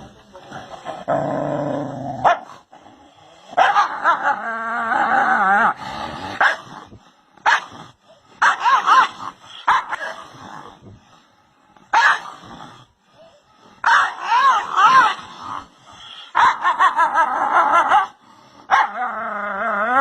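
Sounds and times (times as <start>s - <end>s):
dog barking: 2.2s - 2.5s, 3.6s - 3.9s, 6.4s - 6.6s, 7.4s - 7.8s, 8.4s - 10.2s, 11.9s - 12.3s, 13.8s - 15.1s, 16.4s - 16.6s, 18.7s - 19.0s.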